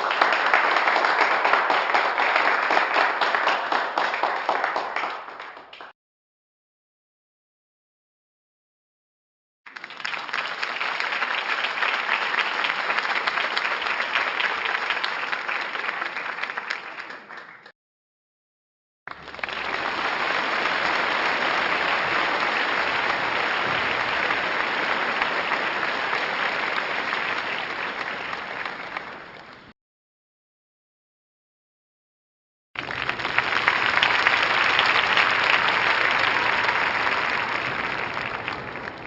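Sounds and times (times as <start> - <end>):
crowd applause: 0.0 - 5.9, 9.7 - 17.7, 19.1 - 29.7, 32.8 - 39.0.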